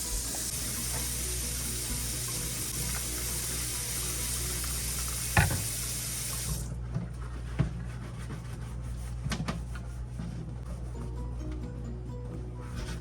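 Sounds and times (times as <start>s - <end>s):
water running: 0.0s - 6.9s.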